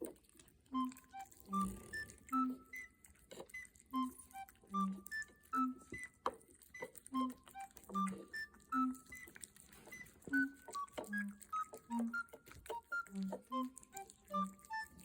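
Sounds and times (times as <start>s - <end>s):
cat chewing noisily: 0.0s - 15.0s
light background music: 0.7s - 15.0s.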